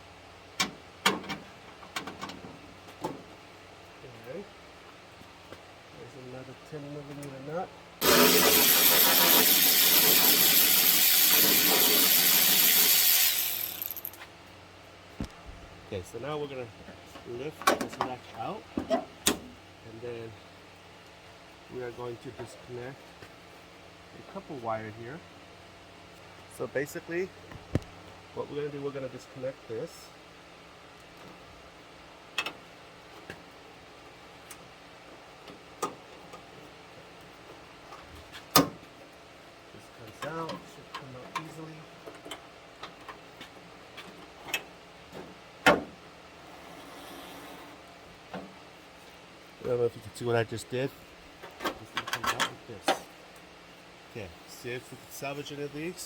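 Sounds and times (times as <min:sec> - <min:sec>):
power tool motor running: 0:08.0 - 0:14.2.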